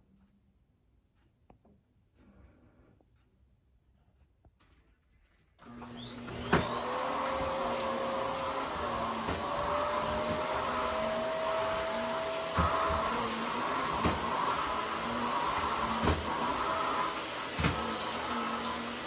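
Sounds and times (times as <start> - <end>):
vacuum cleaner motor whining: 5.6 - 19.0.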